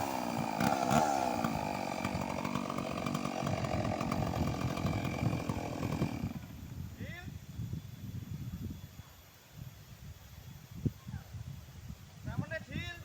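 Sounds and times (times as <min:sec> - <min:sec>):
chainsaw running: 0:00.0 - 0:06.8.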